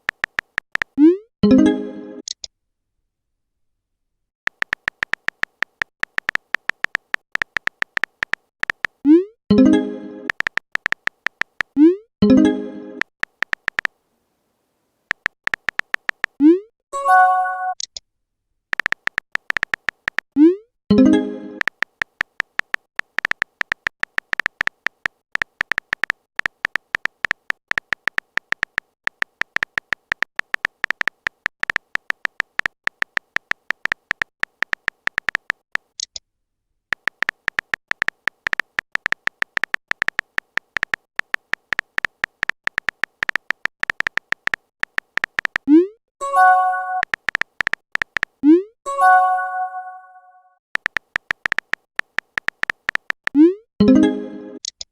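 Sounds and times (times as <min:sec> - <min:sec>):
high electronic typing beeps: 0:04.5 - 0:12.1, 0:13.0 - 0:13.9, 0:15.1 - 0:16.7, 0:18.7 - 0:35.6, 0:36.9 - 0:48.7, 0:50.8 - 0:53.6.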